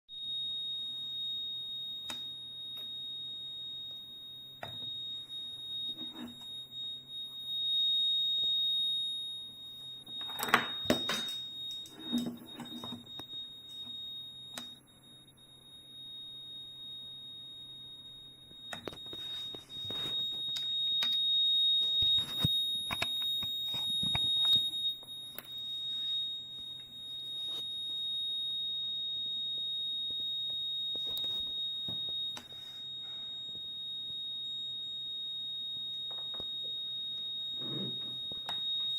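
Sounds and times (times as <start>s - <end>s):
high-pitched buzzer beep: 17.4s - 28.0s, 37.4s - 38.9s.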